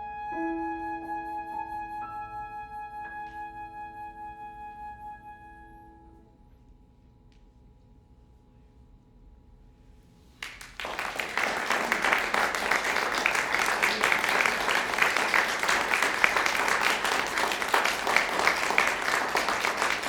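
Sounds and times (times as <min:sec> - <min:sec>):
flute and piano: 0:00.0 - 0:06.6
audience applauding: 0:10.4 - 0:20.0.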